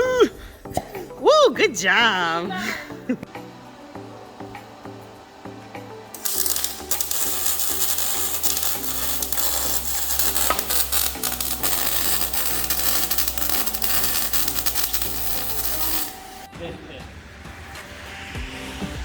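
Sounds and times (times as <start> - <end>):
background music: 0.0 - 19.0
ratchet wrench clicking: 6.2 - 16.5.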